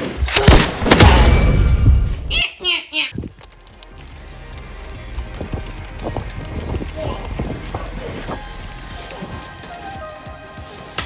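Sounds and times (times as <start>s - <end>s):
quiet background music: 3.4s - 11.0s.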